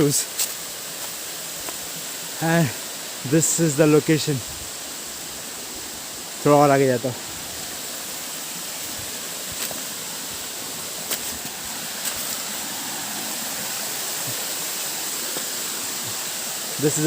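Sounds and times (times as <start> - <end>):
waterfall stream rushing: 0.0 - 17.0.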